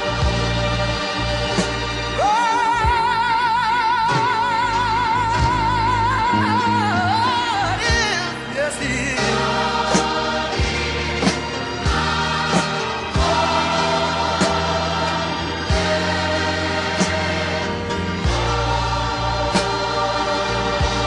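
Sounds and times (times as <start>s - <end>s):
band accompaniment: 0.0s - 21.0s
solo singer with vibrato: 2.1s - 9.6s.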